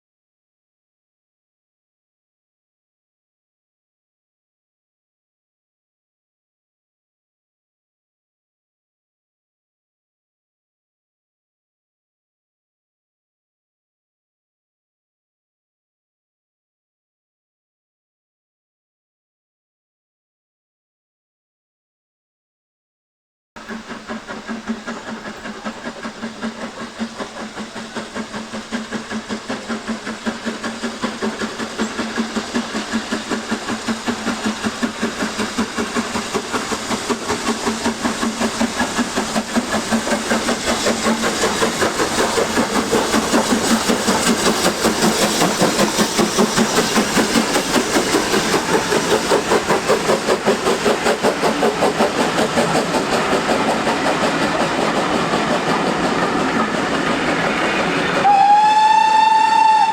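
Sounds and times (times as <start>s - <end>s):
steam hiss: 23.6s - 59.9s
steam locomotive exhaust beating: 23.6s - 59.9s.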